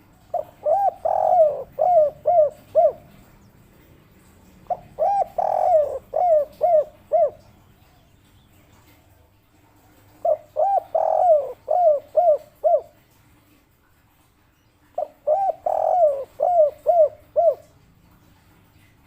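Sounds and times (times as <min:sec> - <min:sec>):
dove cooing: 0:00.0 - 0:13.1, 0:15.0 - 0:17.8.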